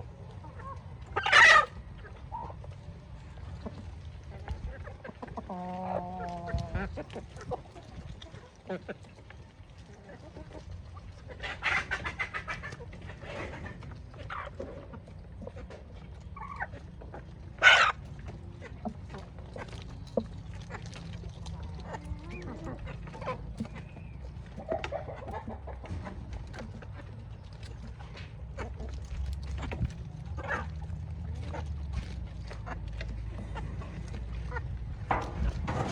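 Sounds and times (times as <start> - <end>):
chickens clucking: 0.0 - 35.9
chicken squawk: 0.6 - 2.6, 11.2 - 14.6, 17.6 - 18.1.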